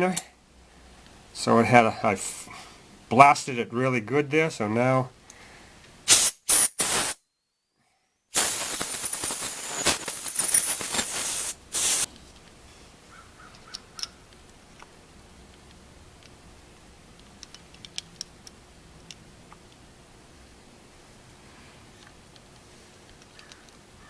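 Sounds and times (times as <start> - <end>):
aerosol spray hissing: 6.1 - 7.2, 8.4 - 12.1.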